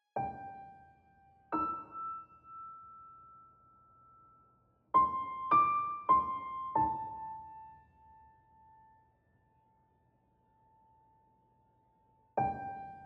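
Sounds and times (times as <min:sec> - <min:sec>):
soft piano melody: 0:00.2 - 0:03.5, 0:04.9 - 0:08.9, 0:12.4 - 0:13.0.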